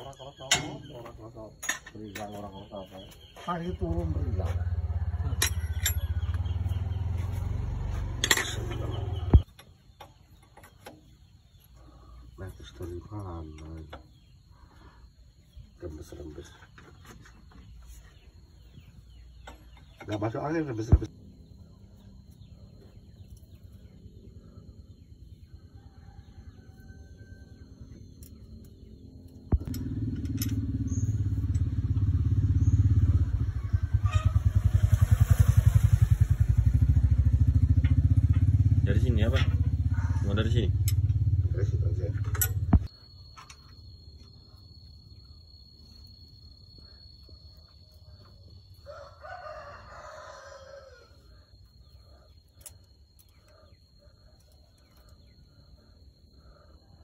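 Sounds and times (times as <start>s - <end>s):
rooster crowing: 4.2s - 6.7s, 25.5s - 27.9s, 48.7s - 51.9s
car engine starting and running: 29.5s - 42.9s.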